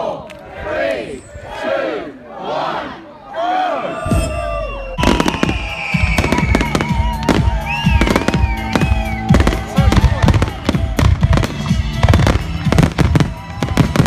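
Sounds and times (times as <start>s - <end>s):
crowd shouting: 0.0s - 14.0s
whistling fireworks: 4.0s - 14.0s
fireworks bangs and crackles: 4.1s - 14.0s
background music: 5.0s - 14.0s.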